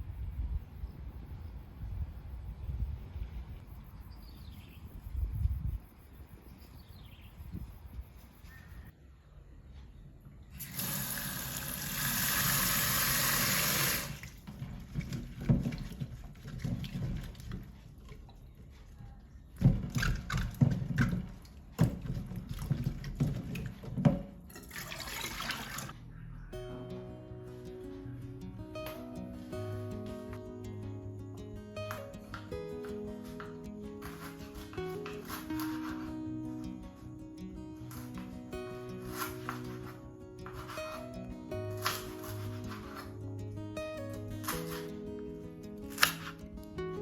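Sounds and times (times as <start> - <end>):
tap water running into sink: 10.6 - 17.6
knocks and clatter: 19.6 - 24.6
acoustic guitar music: 26.5 - 47.0.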